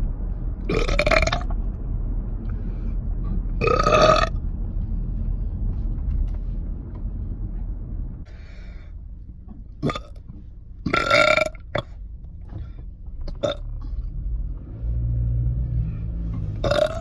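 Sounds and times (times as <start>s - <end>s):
low background rumble: 0.0s - 17.0s
person burping: 0.7s - 1.5s, 3.6s - 4.3s, 9.8s - 10.1s, 10.9s - 11.6s, 16.6s - 17.0s.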